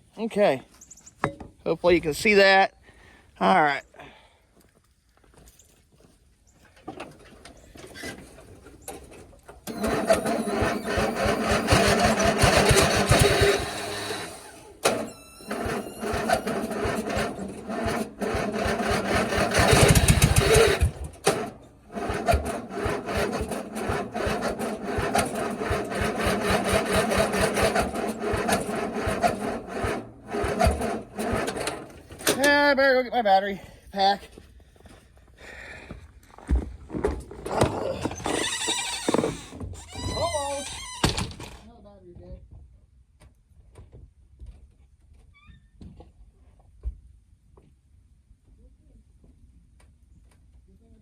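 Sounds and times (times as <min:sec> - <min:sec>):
electric starter cranking engine: 0:09.0 - 0:32.6, 0:37.4 - 0:41.6.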